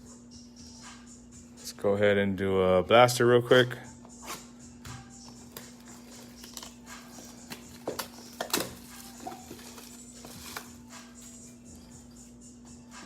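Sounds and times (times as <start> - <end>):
cardboard and wrapper crackling: 5.5 - 11.4.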